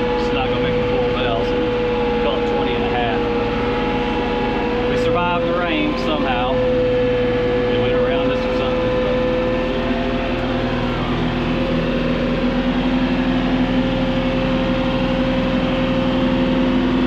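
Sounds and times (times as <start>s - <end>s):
tractor engine running: 0.0s - 17.0s.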